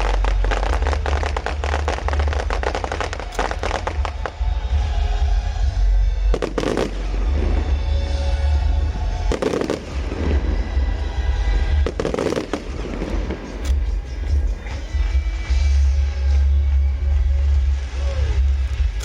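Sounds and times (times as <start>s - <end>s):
deep rumble: 0.0s - 19.0s
music: 0.0s - 19.0s
firework shells bursting: 9.2s - 15.5s.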